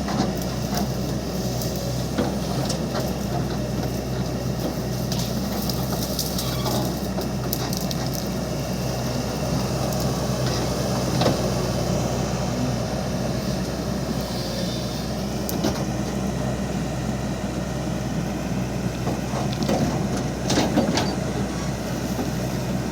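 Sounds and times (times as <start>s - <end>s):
diesel excavator engine running: 0.0s - 22.9s
excavator digging knocks: 19.0s - 21.3s.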